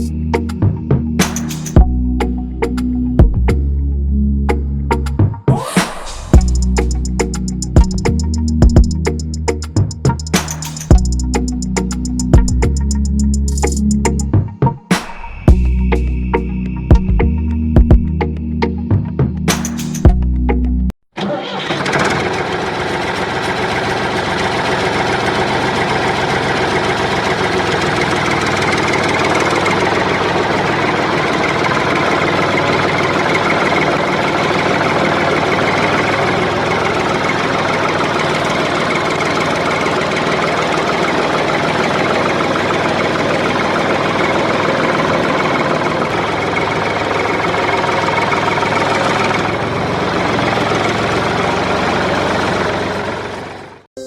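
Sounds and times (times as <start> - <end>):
engine idling: 6.1 - 14.2, 21.2 - 53.9.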